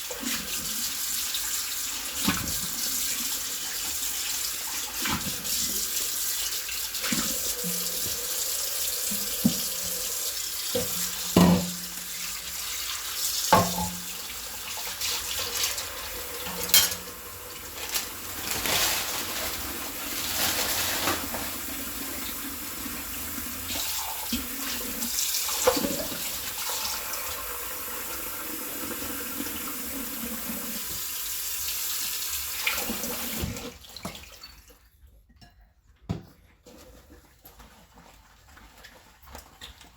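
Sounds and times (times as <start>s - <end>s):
tap water running: 0.0s - 34.8s
sponge scrubbing dishes: 3.6s - 23.7s
dishes clinking together: 13.6s - 14.1s, 16.4s - 17.2s.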